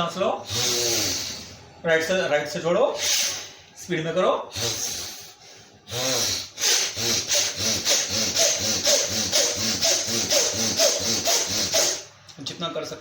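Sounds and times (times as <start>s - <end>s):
rapid forceful nasal breathing: 0.4s - 1.7s, 3.0s - 3.6s, 4.5s - 12.1s.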